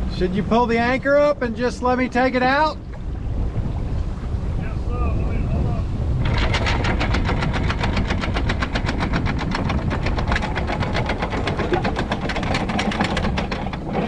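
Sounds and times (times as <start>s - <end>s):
anchor windlass motor clattering: 5.3s - 14.0s.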